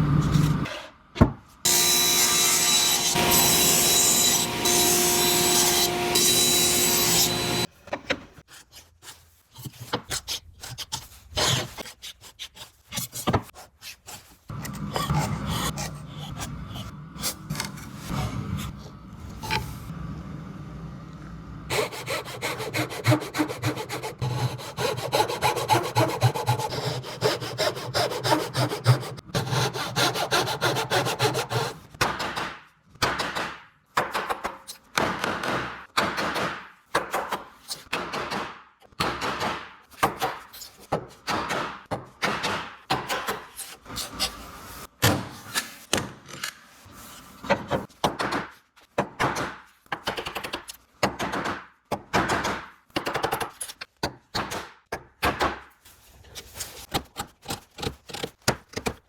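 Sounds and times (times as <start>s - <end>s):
hand saw cutting wood: 1.7s - 7.7s, 21.7s - 31.9s.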